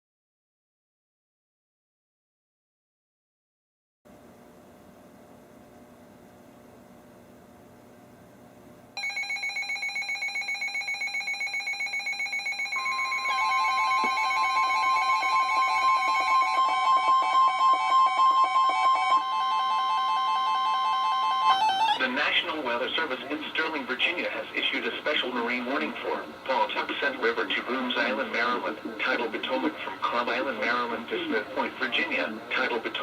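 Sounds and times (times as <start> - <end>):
steady warning alarm tone: 9.0 - 22.0.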